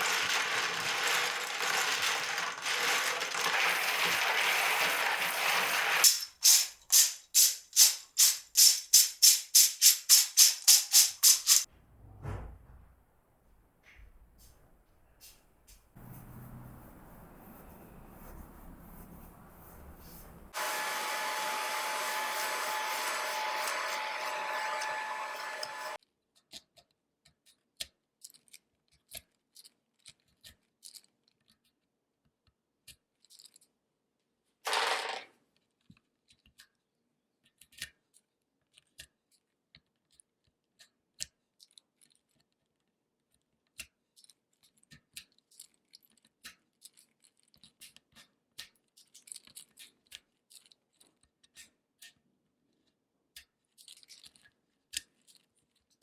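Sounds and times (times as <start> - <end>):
plastic keyboard parts clicking: 0.0 - 5.6
electric blower whine: 20.6 - 26.0.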